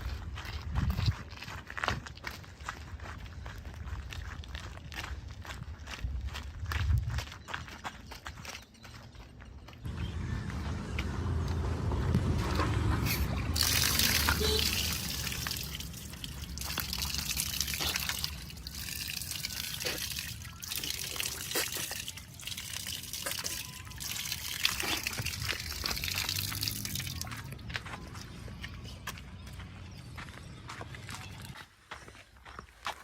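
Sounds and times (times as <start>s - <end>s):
diesel engine running: 9.8s - 20.6s.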